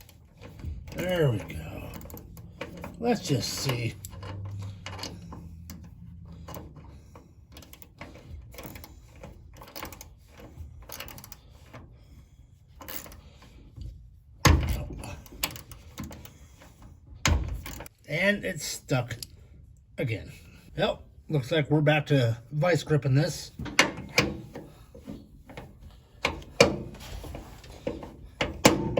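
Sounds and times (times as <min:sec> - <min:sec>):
hand tools clicking on metal: 0:00.0 - 0:06.9.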